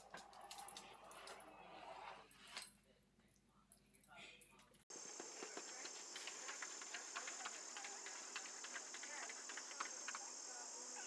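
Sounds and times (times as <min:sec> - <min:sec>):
insect chirring: 0:04.9 - 0:11.0.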